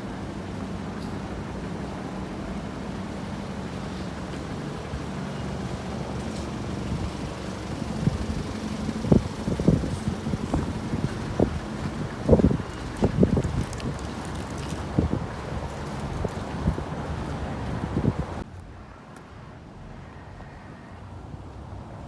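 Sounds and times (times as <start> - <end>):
motor vehicle rumble: 0.0 - 20.5
wind buffeting microphone: 5.8 - 18.4.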